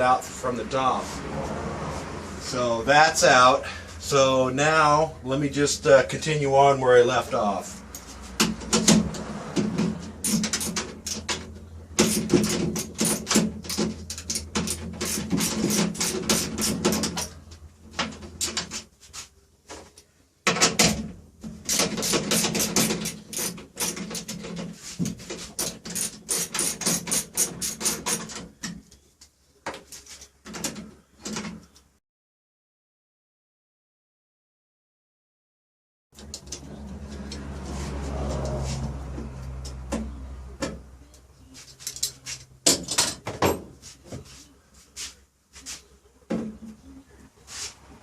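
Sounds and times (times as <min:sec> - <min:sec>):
hand ratchet clicking: 0:10.2 - 0:11.4, 0:21.7 - 0:24.3, 0:25.6 - 0:28.3.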